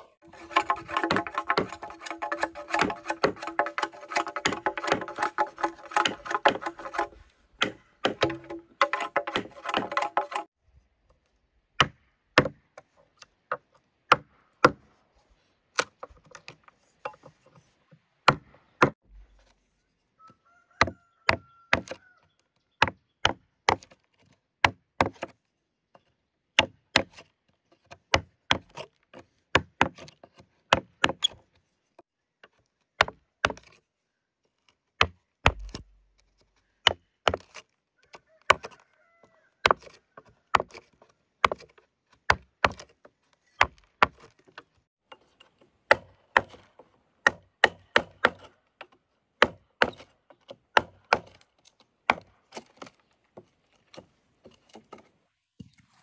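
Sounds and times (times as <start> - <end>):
chopping strokes into wood: 0.2 - 10.6, 11.8 - 12.9, 13.5 - 14.9, 18.2 - 19.5, 20.8 - 22.0, 22.8 - 25.4, 26.6 - 31.4, 32.5 - 33.8, 35.0 - 38.8, 39.6 - 55.9.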